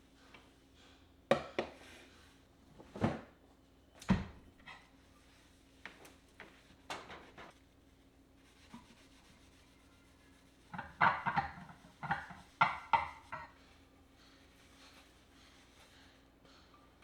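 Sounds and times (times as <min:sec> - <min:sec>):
rubbing strokes: 0:07.1 - 0:16.2.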